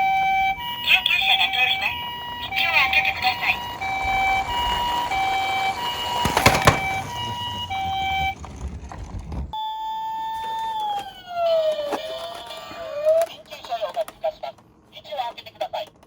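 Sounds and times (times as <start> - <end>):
toy two-tone siren: 0.0 - 8.5, 9.6 - 14.5
siren sliding down in pitch: 0.0 - 8.6, 9.6 - 13.3
short clatter: 4.4 - 9.6.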